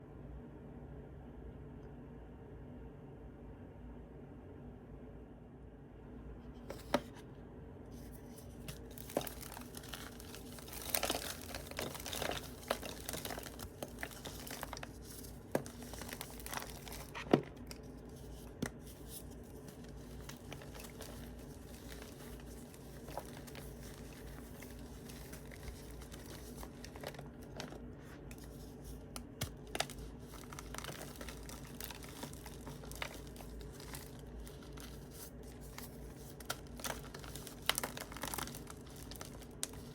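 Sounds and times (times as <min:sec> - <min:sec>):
chalk crumbling by hand: 0:08.0 - 0:39.9.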